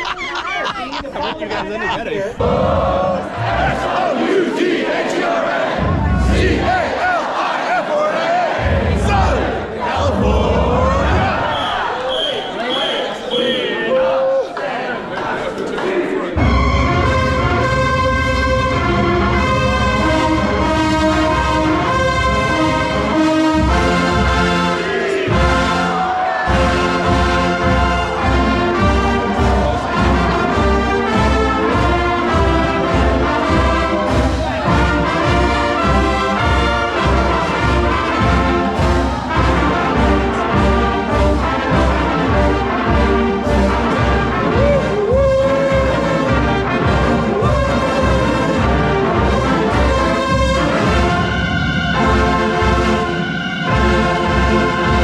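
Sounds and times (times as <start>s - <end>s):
brass-heavy music: 2.4s - 55.0s
bass drum beat: 5.8s - 7.0s, 8.6s - 11.5s, 26.5s - 53.0s.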